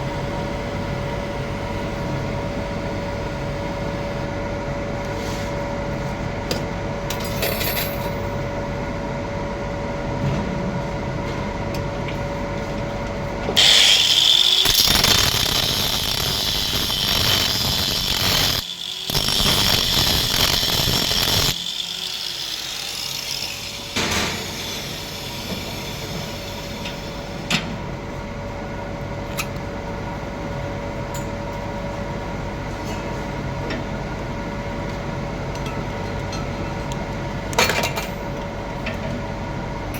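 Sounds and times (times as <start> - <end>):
workshop hum: 0.0 - 39.9
angle grinder whining: 13.6 - 27.5.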